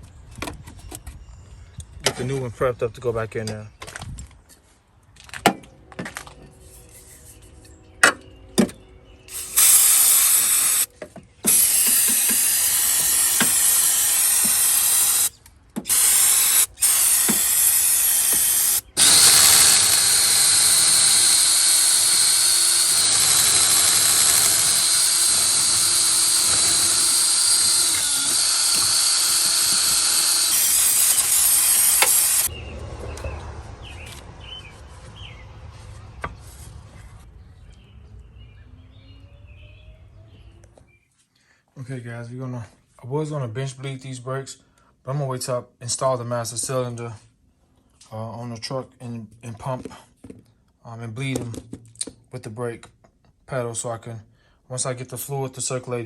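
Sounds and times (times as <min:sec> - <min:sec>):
power tool whining hiss: 0:09.3 - 0:10.9, 0:11.5 - 0:32.5.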